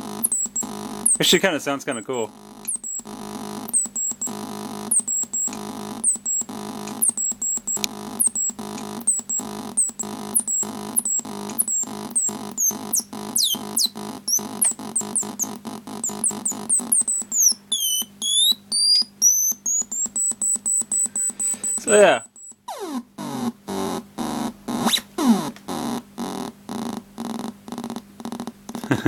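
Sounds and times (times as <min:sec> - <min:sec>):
high electronic chirps: 0:00.0 - 0:22.9
buzzy stuttering alarm tone: 0:00.0 - 0:29.0.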